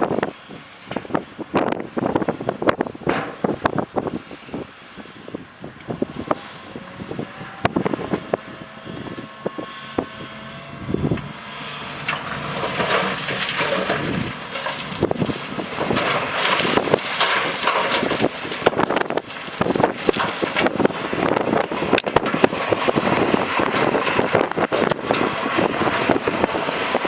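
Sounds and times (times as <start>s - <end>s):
machinery clanks and knocks: 3.0s - 3.7s, 12.0s - 27.0s
rushing rattling noise: 11.8s - 27.0s.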